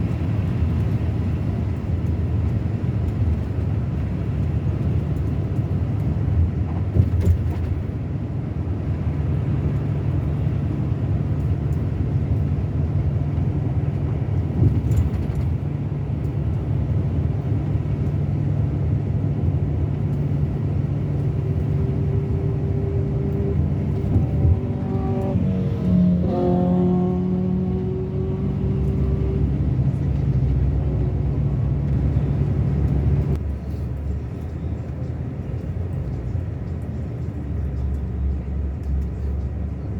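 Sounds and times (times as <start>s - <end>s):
diesel engine running: 8.3s - 39.8s.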